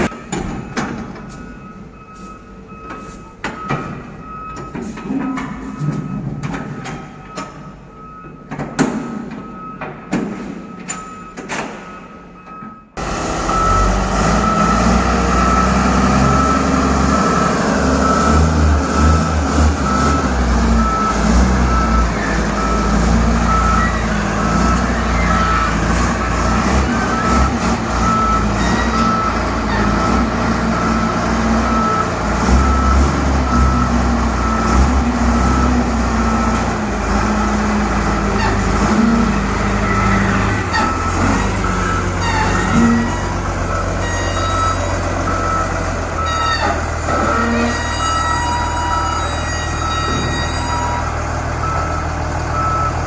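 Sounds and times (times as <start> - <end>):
reversing alarm beeping: 0.0 - 53.0
heavy machinery rumble: 11.6 - 53.0
heavy diesel engine running: 12.4 - 53.0.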